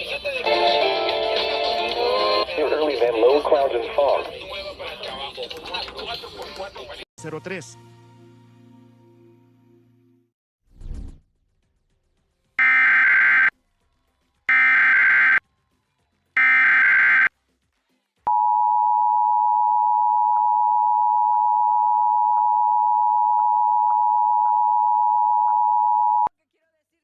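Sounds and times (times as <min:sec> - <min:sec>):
digital data bursts: 0:12.6 - 0:13.5, 0:14.5 - 0:15.4, 0:16.4 - 0:17.3
two-tone attention signal: 0:16.4 - 0:17.3.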